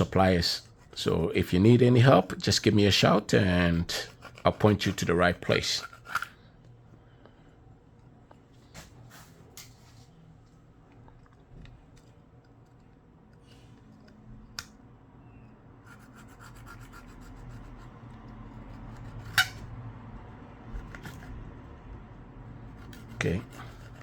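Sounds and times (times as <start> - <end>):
rubbing on phone frame: 0.0 - 6.2, 15.8 - 19.7, 22.7 - 24.0.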